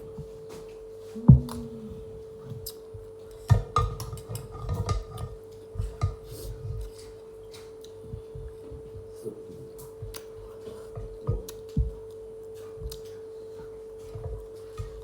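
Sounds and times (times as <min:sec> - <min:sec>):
high-pitched hum: 0:00.1 - 0:03.6
chewing: 0:00.6 - 0:15.0.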